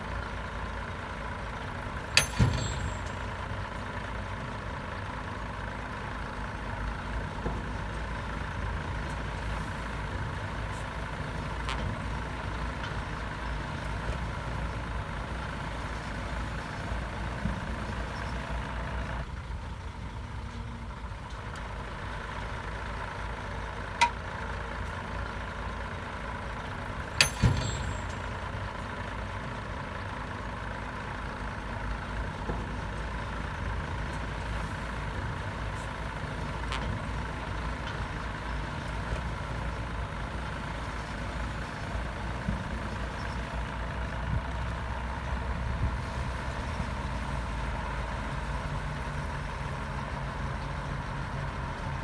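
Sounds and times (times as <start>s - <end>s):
bulldozer diesel engine running: 0.0s - 52.0s
sharp metal clanks: 2.2s - 3.8s, 27.2s - 28.5s.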